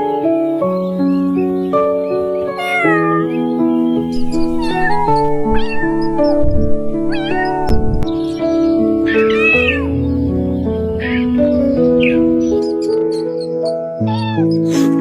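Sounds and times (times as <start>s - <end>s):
music with held notes: 0.0s - 15.0s
cats yowling: 2.3s - 3.5s, 4.1s - 10.0s, 11.0s - 12.2s, 14.0s - 14.7s
low thumps: 4.2s - 9.0s.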